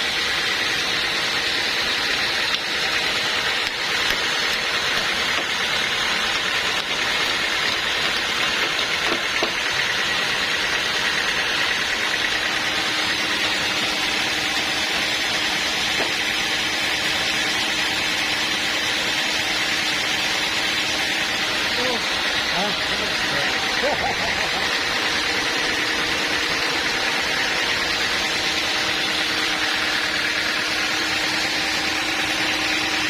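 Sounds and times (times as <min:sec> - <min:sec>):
sawmill machinery running: 0:00.0 - 0:33.0.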